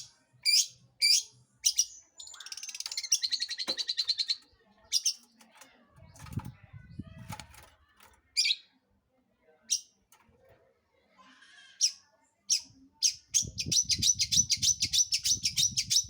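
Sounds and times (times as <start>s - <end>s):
rapid chattering birdsong: 0.0s - 8.7s, 11.7s - 16.0s.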